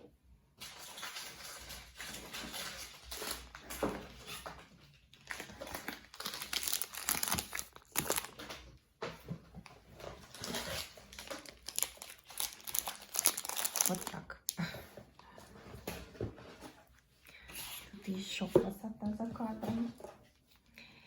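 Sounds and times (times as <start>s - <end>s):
wrapping crinkling and rustling: 0.6s - 14.6s.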